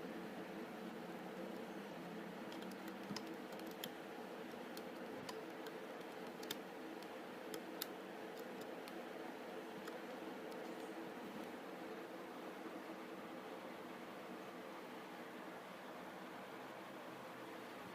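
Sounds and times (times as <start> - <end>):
low hum and hiss: 0.0 - 17.9
light clicks and ticks: 2.5 - 9.0.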